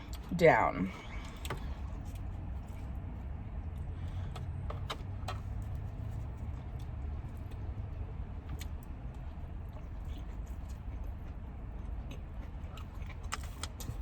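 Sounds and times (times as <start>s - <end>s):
car running heard from inside: 0.0s - 14.0s
eating clicks and smacks: 8.4s - 14.0s.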